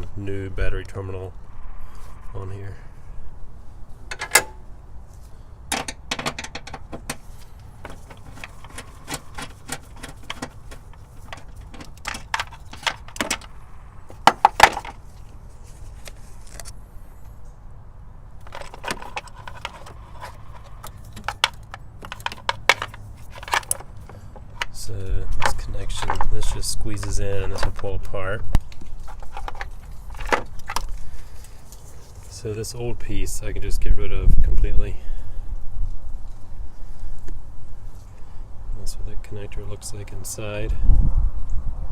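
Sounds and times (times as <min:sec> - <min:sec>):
metal parts and tools clinking: 0:04.1 - 0:04.6, 0:05.7 - 0:15.0, 0:18.4 - 0:24.8.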